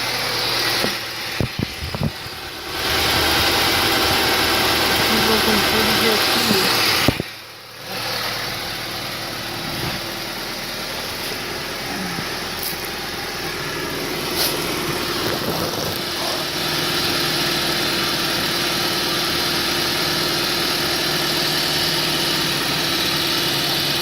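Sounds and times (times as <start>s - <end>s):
car engine idling: 0.0s - 24.0s.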